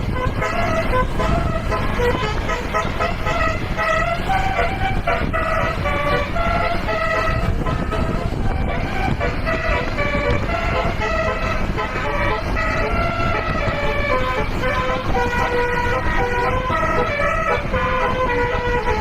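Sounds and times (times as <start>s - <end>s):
bus musical horn tune: 0.0s - 19.0s
engine and road rumble: 0.0s - 19.0s.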